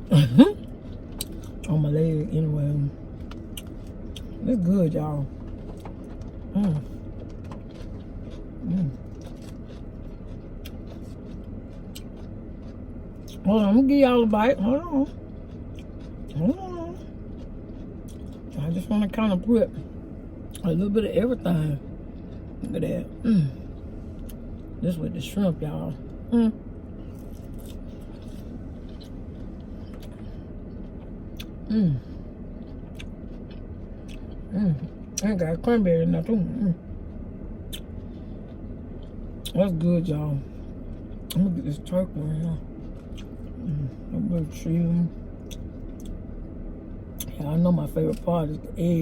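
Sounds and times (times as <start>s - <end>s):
low background hum: 0.0s - 49.0s
steady low rumble: 0.0s - 49.0s
crunching salad: 3.2s - 13.6s, 15.1s - 16.5s, 17.2s - 19.5s, 27.0s - 31.6s, 40.8s - 43.8s
person humming: 31.7s - 32.1s.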